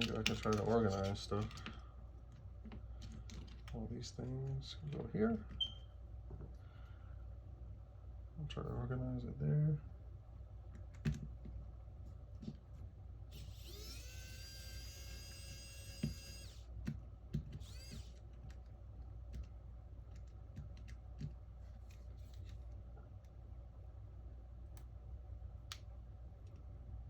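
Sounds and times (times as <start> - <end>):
electric screwdriver whirring: 13.3 - 16.7, 17.6 - 18.2.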